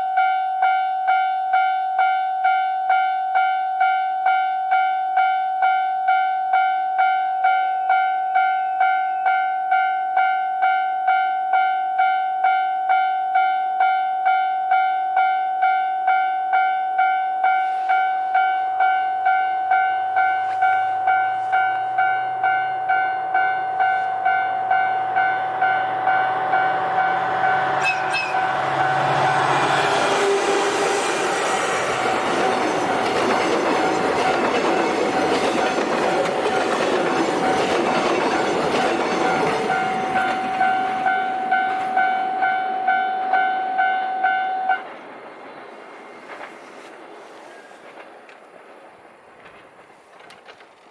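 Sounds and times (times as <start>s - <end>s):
approaching freight train: 0.0s - 50.9s
diesel locomotive engine rumble: 17.4s - 50.9s
level crossing bell clanging: 32.5s - 44.8s.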